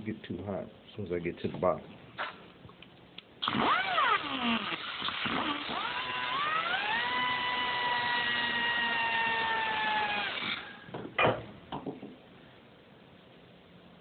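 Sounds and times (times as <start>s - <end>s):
power tool cutting wheel whining: 3.4s - 10.9s
sharp knocks: 10.9s - 12.2s.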